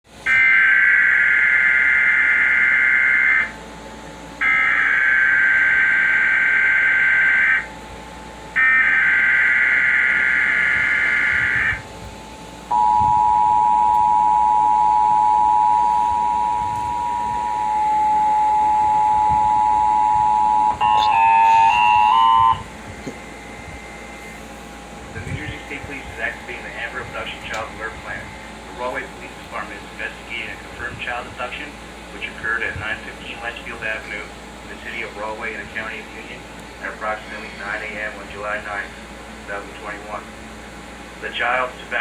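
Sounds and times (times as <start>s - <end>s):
two-tone alert signal: 12.7s - 22.7s
warbling digital data screech: 16.2s - 22.6s.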